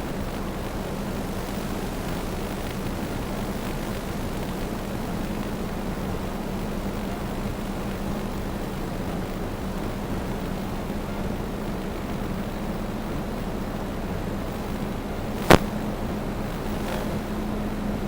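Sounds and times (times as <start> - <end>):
drone propellers humming: 14.4 - 18.0.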